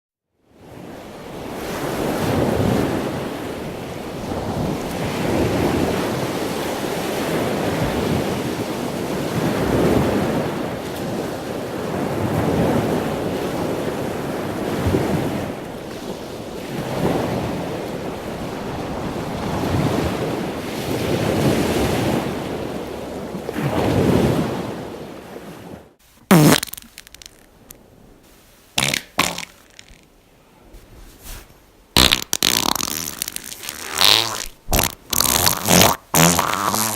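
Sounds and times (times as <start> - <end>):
fart sounds: 26.2 - 27.7, 28.8 - 30.1, 32.0 - 36.9.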